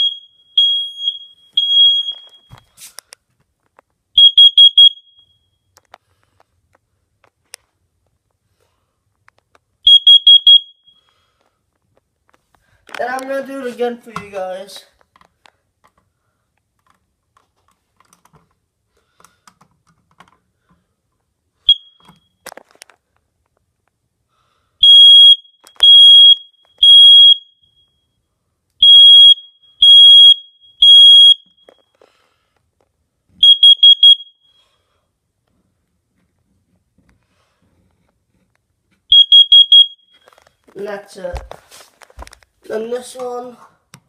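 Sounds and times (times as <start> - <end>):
alarm beeps: 0.0 - 2.6, 4.2 - 5.6, 9.9 - 11.1, 21.7 - 22.4, 24.8 - 28.1, 28.8 - 31.8, 33.4 - 34.7, 39.1 - 40.4
alarm chirp: 0.0 - 2.6, 4.2 - 5.6, 9.9 - 11.1, 21.7 - 22.3, 24.8 - 28.1, 28.8 - 31.8, 33.4 - 34.7, 39.1 - 40.3.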